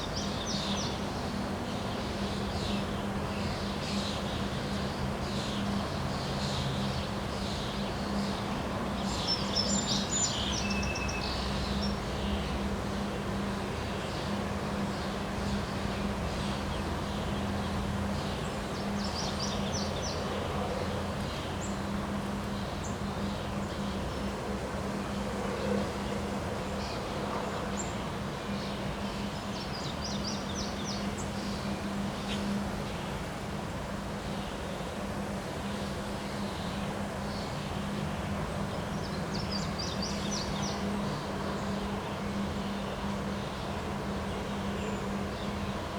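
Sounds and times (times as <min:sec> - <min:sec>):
wind: 0:00.0 - 0:45.9
bird song: 0:01.7 - 0:12.4, 0:14.0 - 0:20.4, 0:27.7 - 0:33.0, 0:38.8 - 0:45.8.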